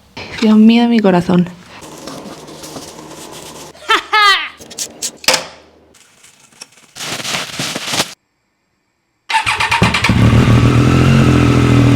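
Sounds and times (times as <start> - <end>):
motorcycle engine starting and idling: 9.3 - 11.9.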